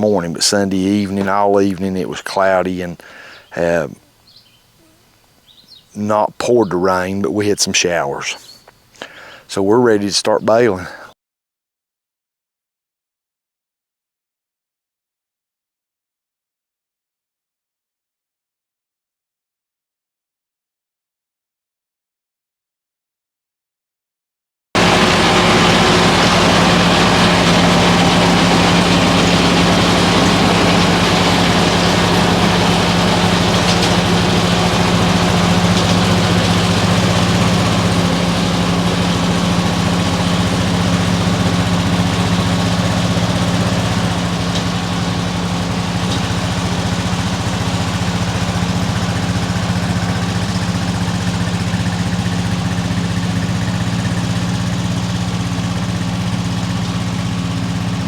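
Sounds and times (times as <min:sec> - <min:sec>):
tractor diesel engine humming: 0:00.0 - 0:11.1, 0:24.8 - 0:58.0.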